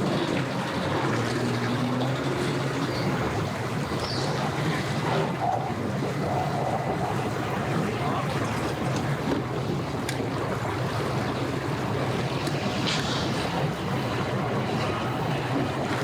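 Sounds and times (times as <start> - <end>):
boat motor running low: 0.0 - 16.0
water: 0.0 - 16.0
wind noise on microphone: 8.8 - 16.0.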